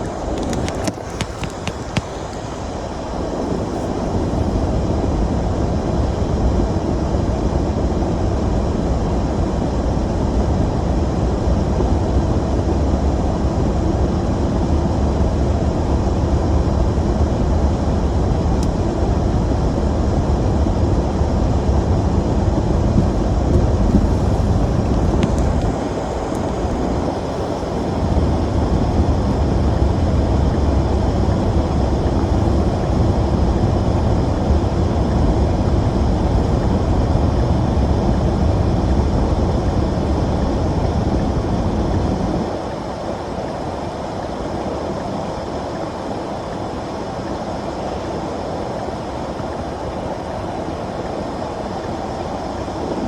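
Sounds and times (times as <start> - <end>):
vehicle engine rumble: 0.0 - 4.7, 21.9 - 37.5.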